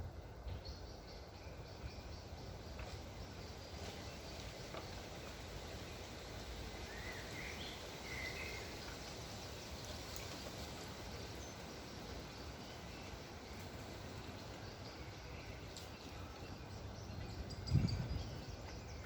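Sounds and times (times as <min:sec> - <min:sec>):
wind noise: 0:17.1 - 0:19.0.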